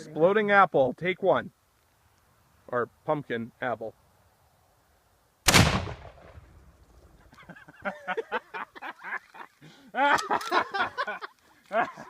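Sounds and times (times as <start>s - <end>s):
explosive target blast: 5.5s - 6.5s.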